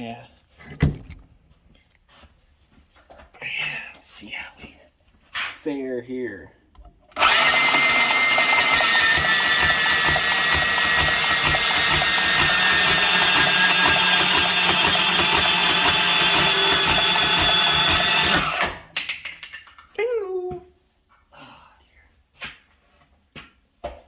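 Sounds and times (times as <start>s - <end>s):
power tool cutting metal tube: 7.2s - 18.9s.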